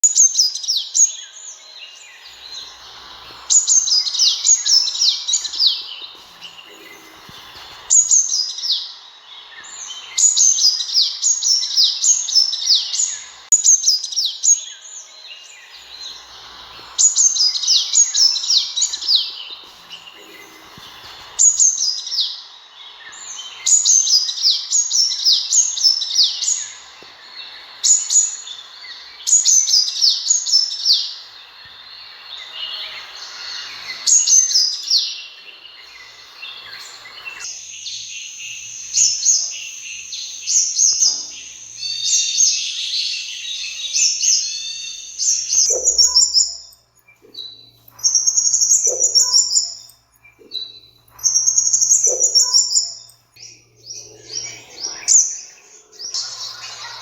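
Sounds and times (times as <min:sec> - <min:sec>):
sunbird calling high descending notes: 0:53.5 - 0:57.0.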